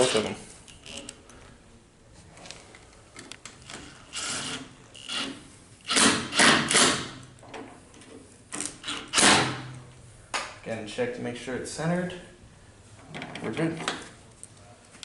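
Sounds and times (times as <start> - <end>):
screwdriver scraping screws: 4.1 - 7.1.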